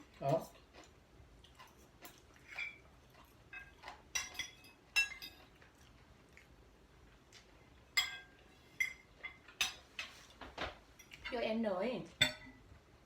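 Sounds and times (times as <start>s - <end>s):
cutlery clinking on plates: 1.6s - 2.9s, 3.5s - 5.6s, 7.9s - 10.1s, 12.2s - 12.6s.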